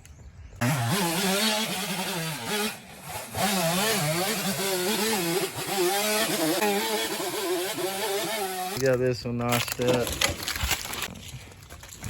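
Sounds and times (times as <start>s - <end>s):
chainsaw cutting wood: 0.6s - 9.0s.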